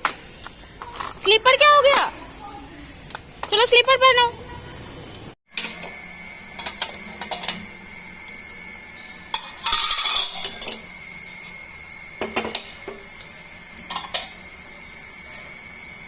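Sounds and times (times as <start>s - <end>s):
metal pot lid and spoon clinking: 9.4s - 10.9s, 13.8s - 14.4s.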